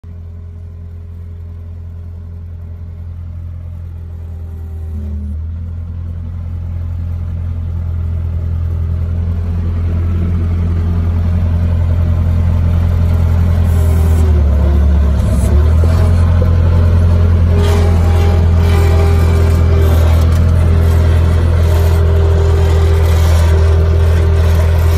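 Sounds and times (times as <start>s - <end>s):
skid steer engine running: 0.0s - 24.9s
clatter: 11.6s - 24.9s.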